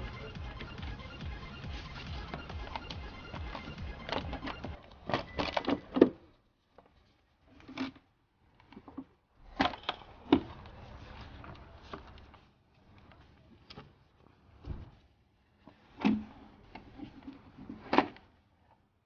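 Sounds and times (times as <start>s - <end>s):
plastic parts being handled: 0.0s - 15.0s.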